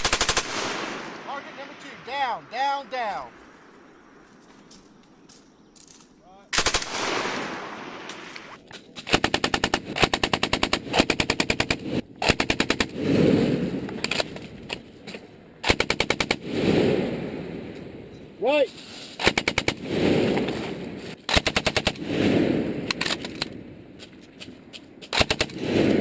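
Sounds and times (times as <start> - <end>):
machine gun firing bursts: 0.0 - 1.8, 6.5 - 8.3, 9.0 - 13.2, 15.6 - 16.7, 19.2 - 20.3, 21.3 - 22.3, 25.1 - 26.0.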